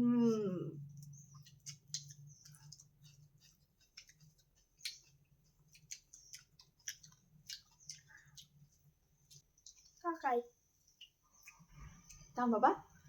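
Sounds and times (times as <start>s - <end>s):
chewing crunches: 0.9s - 10.0s.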